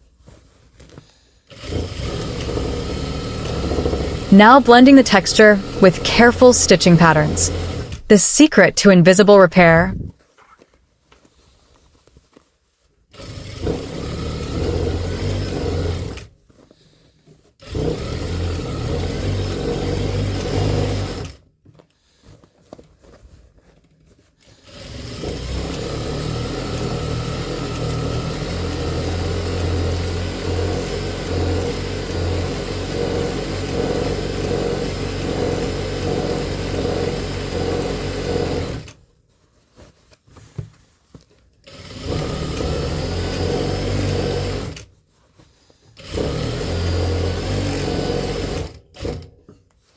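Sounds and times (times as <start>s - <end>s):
sewing machine stitching: 1.5s - 4.7s, 13.1s - 16.3s, 17.6s - 21.4s, 24.7s - 39.0s, 41.6s - 44.8s, 46.0s - 49.3s.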